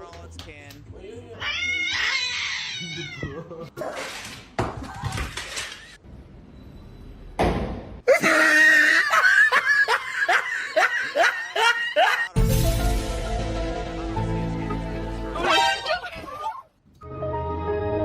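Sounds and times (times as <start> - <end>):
person laughing hard: 8.1 - 12.4.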